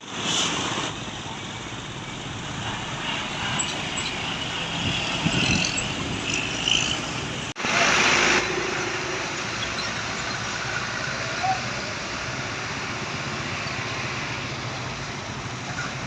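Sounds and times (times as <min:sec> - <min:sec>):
buses passing: 0:00.0 - 0:16.0.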